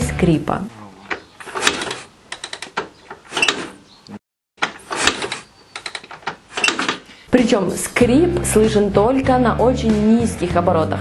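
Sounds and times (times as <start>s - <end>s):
metallic knocking and squeak: 1.0s - 4.0s, 4.6s - 7.1s.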